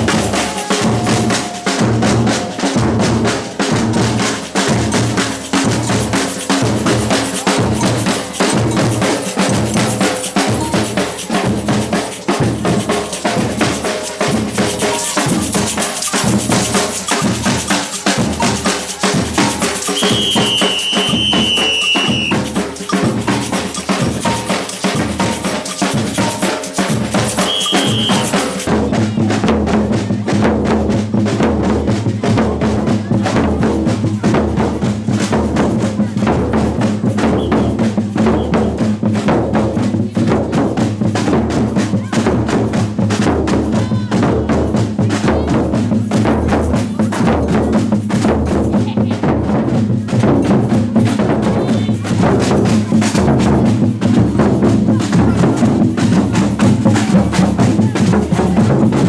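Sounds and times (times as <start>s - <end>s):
samba percussion ensemble: 0.0s - 59.0s
surdo bass drums: 0.0s - 59.0s
short high whistle: 19.9s - 22.5s, 27.4s - 28.6s.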